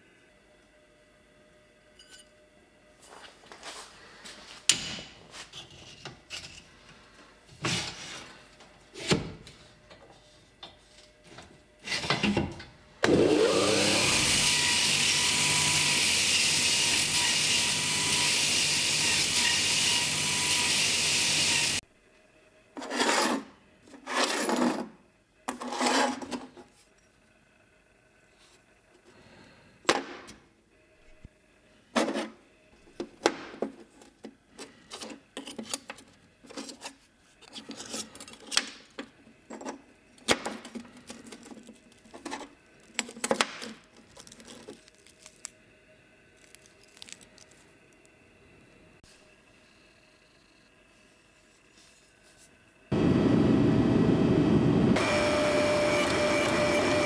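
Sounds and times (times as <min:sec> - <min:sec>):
power tool running: 0:13.0 - 0:21.8, 0:52.9 - 0:57.0.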